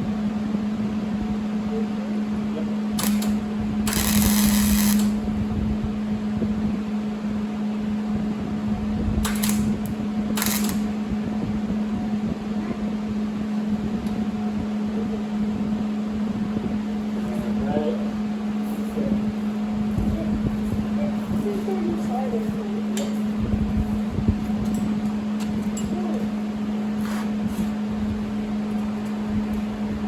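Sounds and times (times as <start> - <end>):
welder low hum: 1.7 - 7.3.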